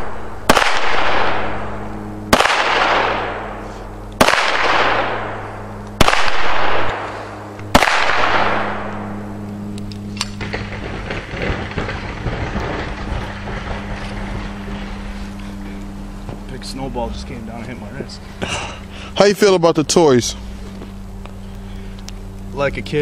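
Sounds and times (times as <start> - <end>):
echoing gunshots: 0.0 - 9.4, 10.3 - 14.6.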